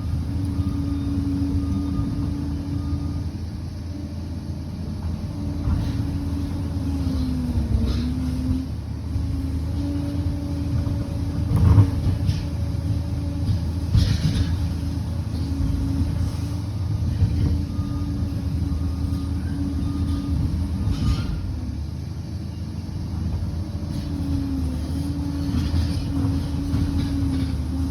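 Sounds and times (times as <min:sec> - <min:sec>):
bulldozer diesel engine running: 0:00.0 - 0:27.9
clanks from tracks and blade: 0:13.3 - 0:17.7, 0:20.0 - 0:21.8, 0:23.9 - 0:27.9.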